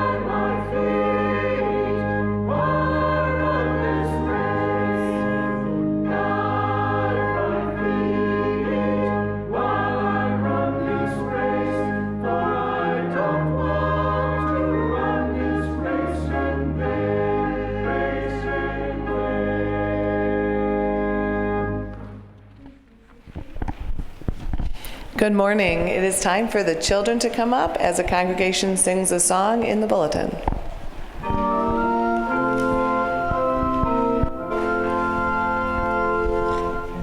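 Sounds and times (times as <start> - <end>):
church choir singing: 0.0 - 22.3, 26.4 - 37.0
organ chords: 0.0 - 22.6, 26.0 - 37.0.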